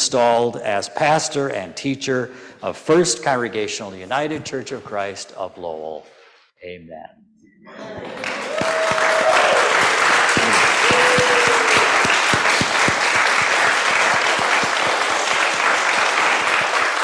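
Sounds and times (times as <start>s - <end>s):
congregation applauding: 7.9s - 17.0s.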